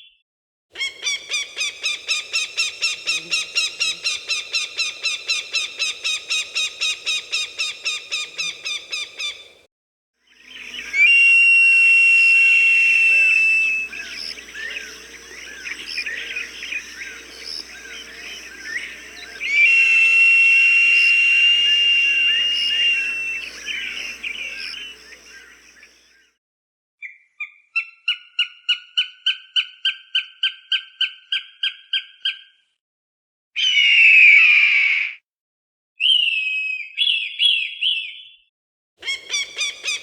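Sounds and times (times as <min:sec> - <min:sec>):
short sharp hawk calls: 0:00.8 - 0:09.6, 0:10.8 - 0:25.6
small birds chirping: 0:00.8 - 0:09.6, 0:12.8 - 0:26.1, 0:39.0 - 0:40.0
hawk screaming: 0:10.6 - 0:25.6.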